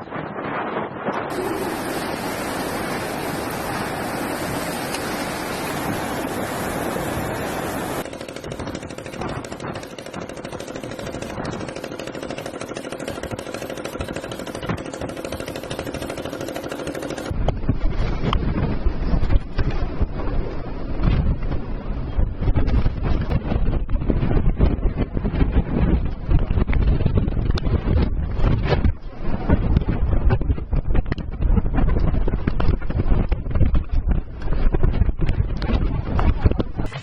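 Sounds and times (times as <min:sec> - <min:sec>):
gusts buffeting microphone: 0:00.0 - 0:37.0
strong wind: 0:00.0 - 0:37.0
heavy rain: 0:01.3 - 0:08.0.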